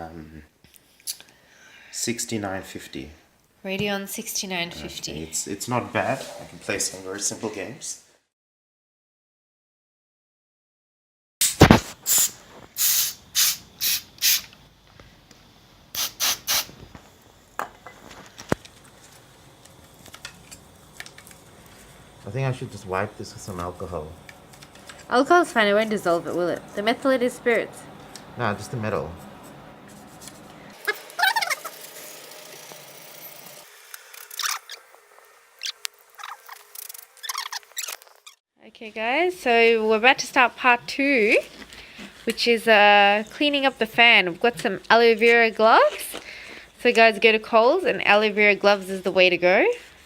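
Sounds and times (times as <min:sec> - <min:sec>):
spray can hissing bursts: 0:11.4 - 0:14.6, 0:15.9 - 0:16.8
cloth squeaking on metal: 0:30.8 - 0:31.7.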